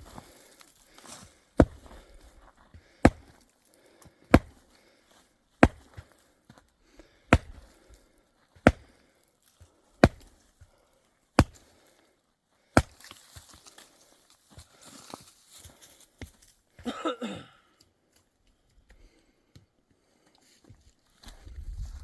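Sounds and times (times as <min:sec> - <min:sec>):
axe chopping dry wood: 0:01.6 - 0:02.2, 0:02.9 - 0:03.4, 0:04.3 - 0:04.7, 0:05.6 - 0:06.2, 0:07.3 - 0:08.0, 0:08.6 - 0:09.0, 0:10.0 - 0:10.5, 0:11.4 - 0:11.7, 0:12.8 - 0:13.2.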